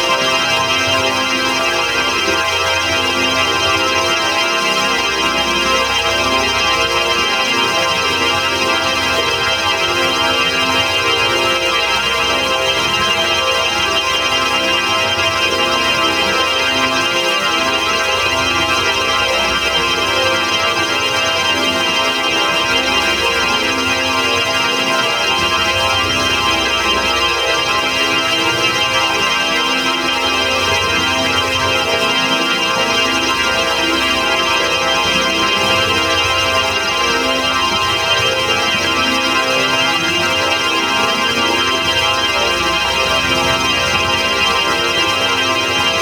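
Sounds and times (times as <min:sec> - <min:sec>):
organ-like held chord: 0:00.0 - 0:46.0.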